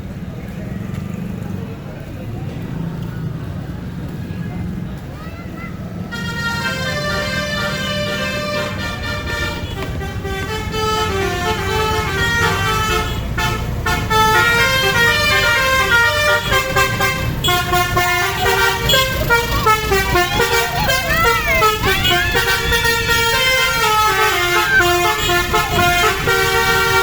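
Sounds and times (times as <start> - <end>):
bus engine rumble: 0.0 - 27.0
multi-tone bus horn tune: 6.0 - 27.0
swooping rising and falling tones: 18.4 - 26.4.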